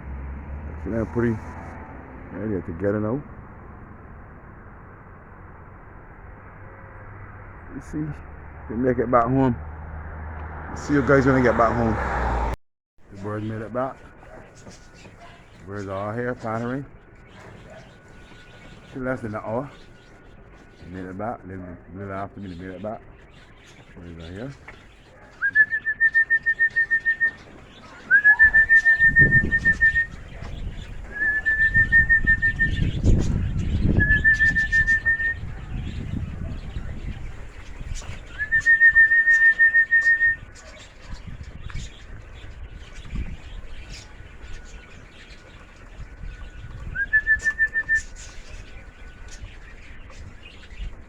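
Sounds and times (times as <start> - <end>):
low rumble: 0.0 - 12.6
trilling whistle blasts: 25.4 - 27.4, 28.1 - 30.2, 31.1 - 33.0, 33.9 - 35.5, 38.3 - 40.4, 46.9 - 48.2.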